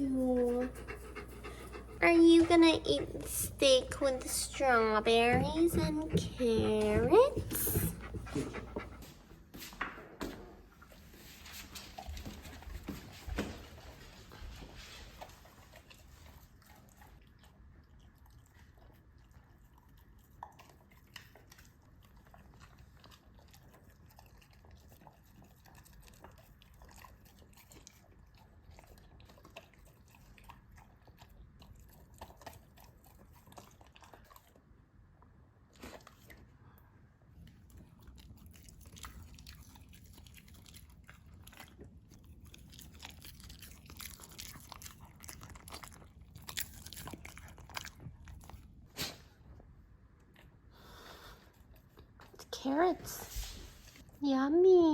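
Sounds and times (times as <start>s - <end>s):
dog chewing and crunching food: 0.0s - 9.4s, 10.3s - 54.2s.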